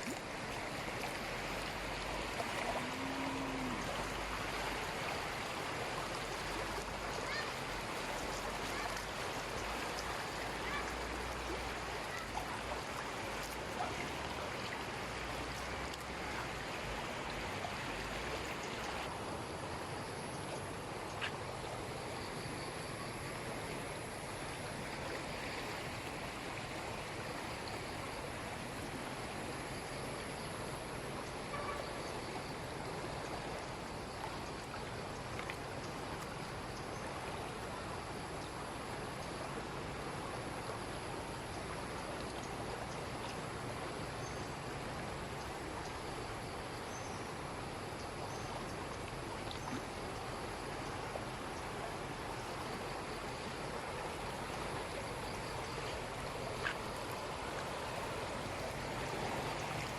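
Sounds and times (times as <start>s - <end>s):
floodwater rushing: 0.0s - 22.2s, 23.0s - 59.9s.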